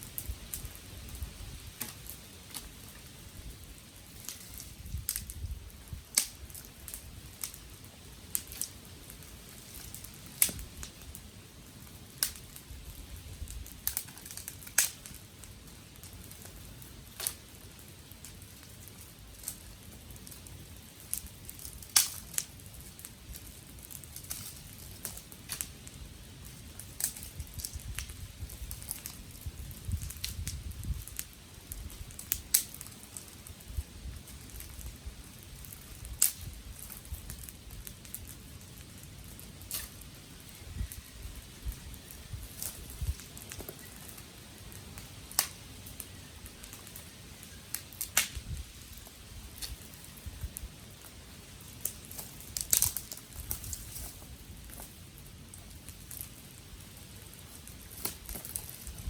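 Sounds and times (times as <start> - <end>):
low rush of flame: 0.0 - 59.0
wood fire crackling and popping: 0.0 - 59.0.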